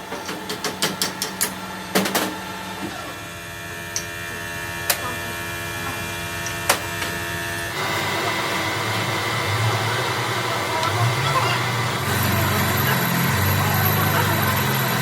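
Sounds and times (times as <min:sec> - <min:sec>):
workshop machine whining: 0:00.0 - 0:15.0.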